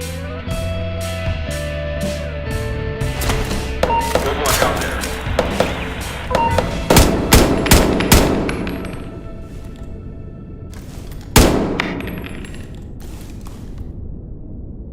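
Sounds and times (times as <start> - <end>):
background music: 0.0 - 13.8
rifle shots: 3.8 - 9.2, 10.8 - 13.7.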